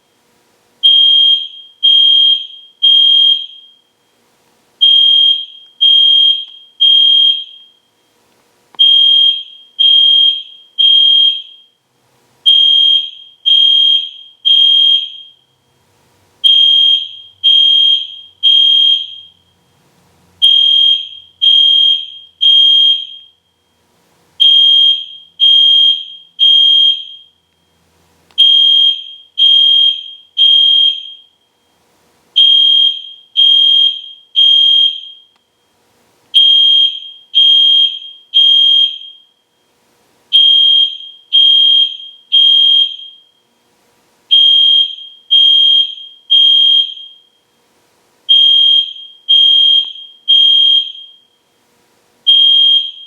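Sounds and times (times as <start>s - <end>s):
fire alarm horn beeping: 0.8s - 3.9s, 4.8s - 7.9s, 8.8s - 11.8s, 12.4s - 15.4s, 16.4s - 19.7s, 20.4s - 23.8s, 24.4s - 27.4s, 28.4s - 31.7s, 32.4s - 35.7s, 36.3s - 39.6s, 40.3s - 43.5s, 44.3s - 47.5s, 48.3s - 51.5s, 52.2s - 53.0s.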